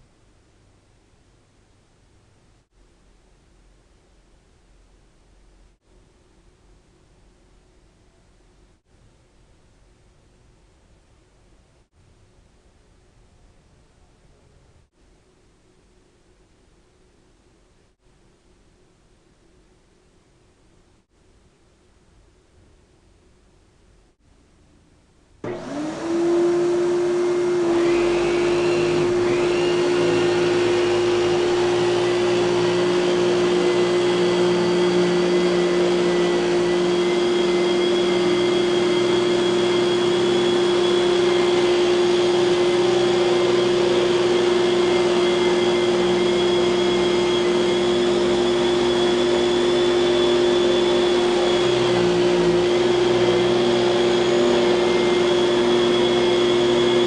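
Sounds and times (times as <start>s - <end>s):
vacuum cleaner motor whining: 25.4s - 57.0s.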